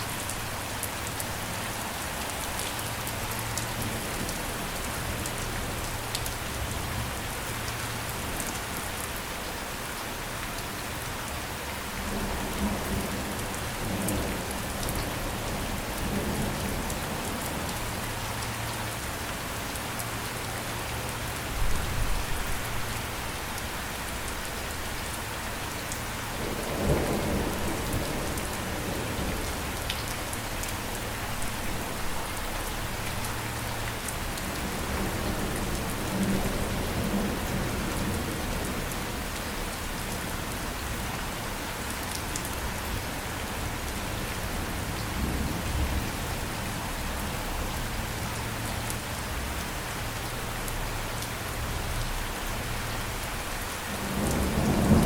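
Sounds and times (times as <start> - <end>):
steady rain falling: 0.0 - 55.0
thunder rumbling: 53.9 - 55.0.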